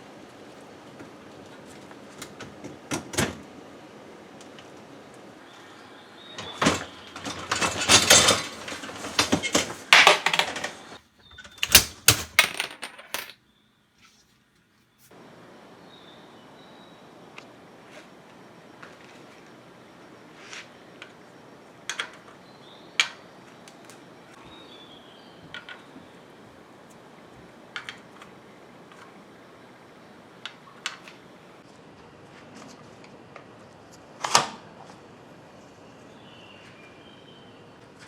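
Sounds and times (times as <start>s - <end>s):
small hard parts clattering: 6.4s - 13.4s.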